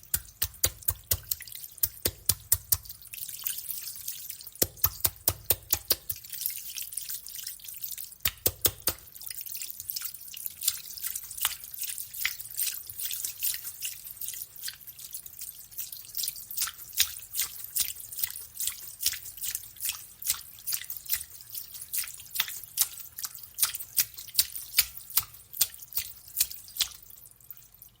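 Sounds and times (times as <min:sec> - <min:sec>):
high-pitched water drops: 0:00.0 - 0:03.1, 0:04.6 - 0:06.7, 0:08.2 - 0:09.9.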